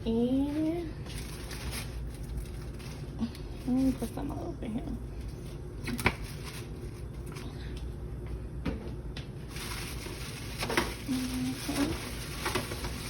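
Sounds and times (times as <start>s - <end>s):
low background hum: 0.0s - 13.0s
plastic bag rustling: 0.1s - 4.5s, 5.2s - 7.4s, 9.4s - 13.0s.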